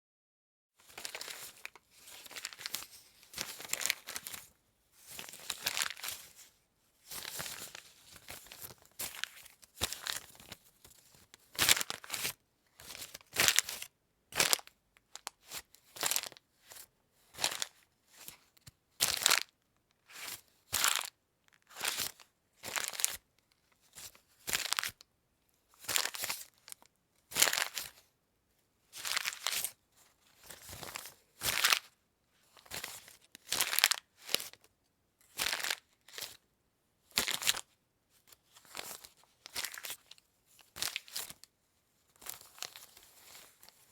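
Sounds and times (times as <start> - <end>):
paper crumpling: 5.2 - 6.1.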